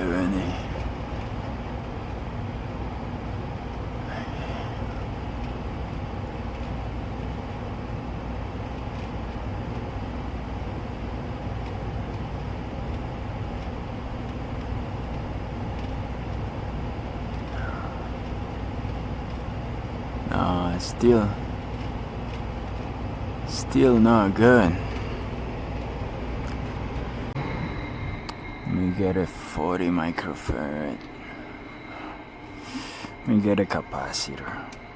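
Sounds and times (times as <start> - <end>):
low even hum: 0.0 - 34.9
furnace air rushing: 21.2 - 33.4.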